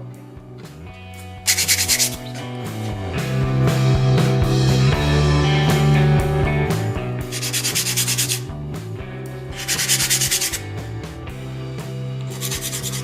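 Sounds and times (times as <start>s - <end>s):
background music: 0.0s - 13.0s
sanding plexiglass edge: 1.5s - 2.4s, 7.3s - 8.5s, 9.6s - 10.8s, 12.3s - 13.0s.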